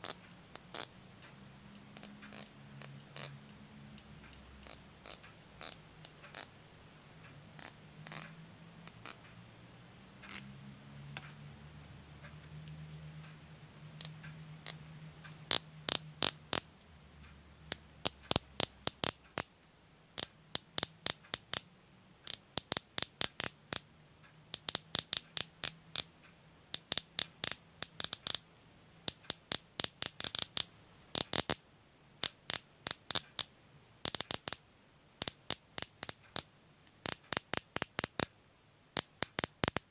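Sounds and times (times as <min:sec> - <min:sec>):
cable tie ratcheting clicks: 0:01.8 - 0:03.4, 0:20.2 - 0:23.9, 0:26.8 - 0:28.5, 0:29.1 - 0:31.6, 0:32.2 - 0:34.6, 0:39.0 - 0:39.9.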